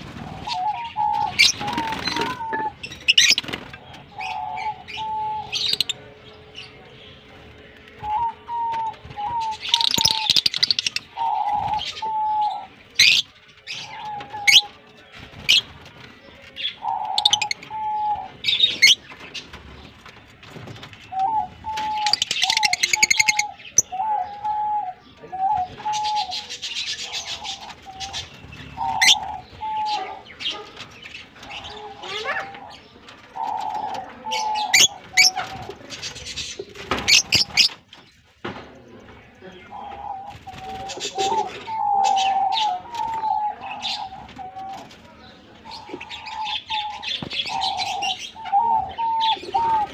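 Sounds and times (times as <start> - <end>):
lovebirds chirping and chattering: 0.0 - 49.9.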